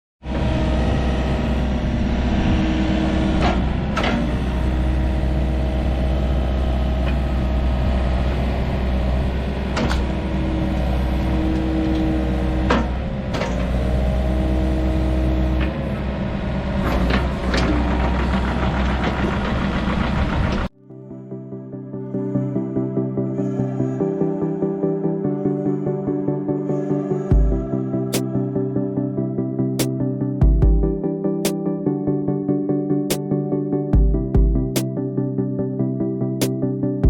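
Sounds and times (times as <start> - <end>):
diesel engine running: 0.2 - 20.7
engine whine: 0.2 - 31.0.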